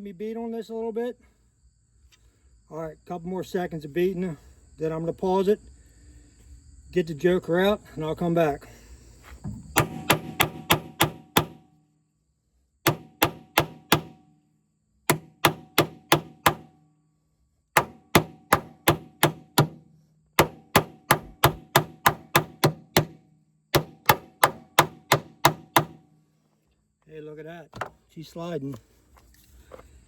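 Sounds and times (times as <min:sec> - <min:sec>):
hammer striking steel tool: 0:09.8 - 0:11.6, 0:12.9 - 0:14.2, 0:15.1 - 0:16.7, 0:17.8 - 0:19.8, 0:20.4 - 0:23.2, 0:23.8 - 0:26.0.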